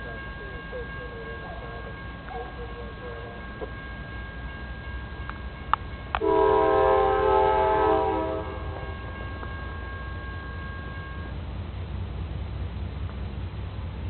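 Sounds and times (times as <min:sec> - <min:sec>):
train rumbling past: 0:00.0 - 0:14.0
locomotive air horn chord: 0:06.2 - 0:11.3.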